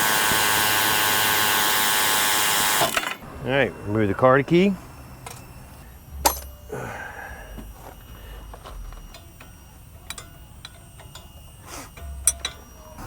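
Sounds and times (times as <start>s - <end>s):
hand tools clicking and knocking: 6.2s - 6.6s, 7.6s - 13.0s.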